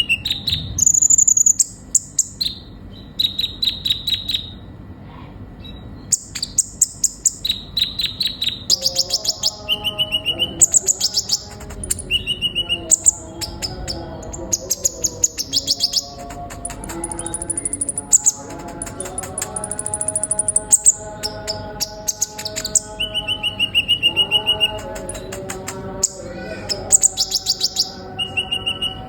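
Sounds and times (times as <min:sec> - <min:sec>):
sunbird singing high chirps: 0:05.6 - 0:25.4, 0:26.0 - 0:29.0.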